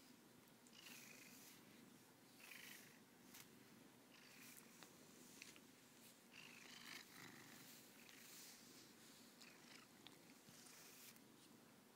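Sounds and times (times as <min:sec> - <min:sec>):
cat purring: 0:00.7 - 0:03.1, 0:04.1 - 0:05.6, 0:06.3 - 0:11.2
brush swishing through fur: 0:07.4 - 0:09.4.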